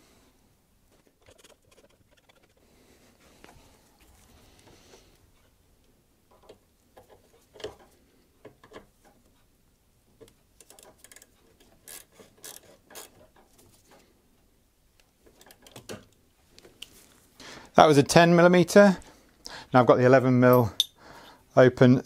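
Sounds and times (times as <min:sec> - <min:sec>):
hand tools clicking and tapping: 0:10.2 - 0:13.5
ratchet tightening: 0:10.6 - 0:13.2.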